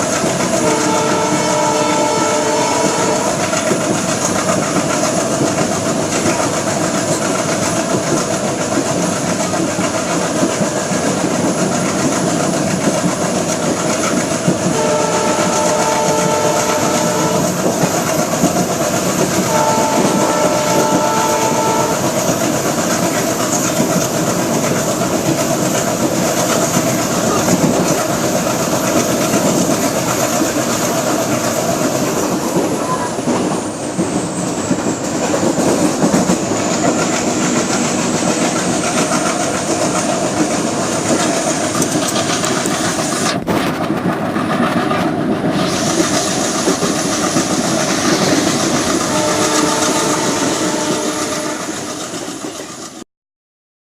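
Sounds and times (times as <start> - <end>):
train wheels on rails: 0.0 - 53.0
multi-tone train horn: 0.5 - 3.8, 14.6 - 17.8, 19.2 - 22.4, 48.2 - 52.2.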